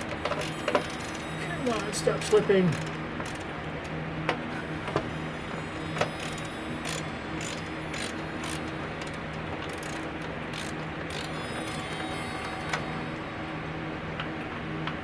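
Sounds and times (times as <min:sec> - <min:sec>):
clock mechanism clicking: 0:00.0 - 0:04.0, 0:05.9 - 0:12.8.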